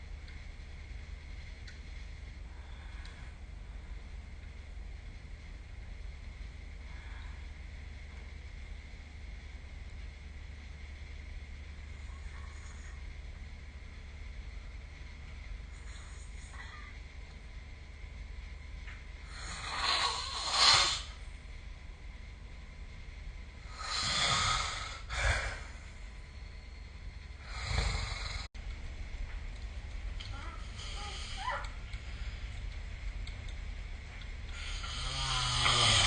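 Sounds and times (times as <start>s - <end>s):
low rumble and hiss of room noise: 0.0s - 36.0s
person snoring: 23.7s - 25.8s, 27.4s - 28.5s, 34.5s - 36.0s.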